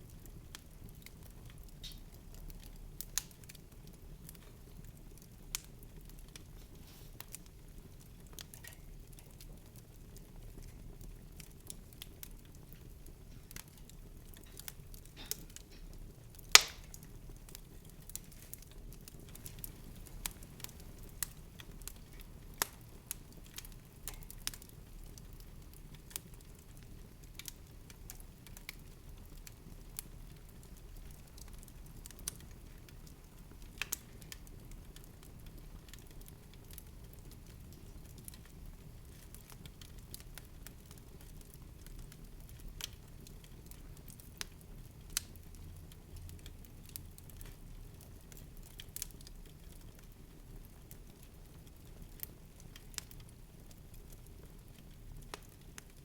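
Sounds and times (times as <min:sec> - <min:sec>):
soft crackles and pops: 0:00.0 - 0:56.0
loud snap: 0:16.6 - 0:16.9.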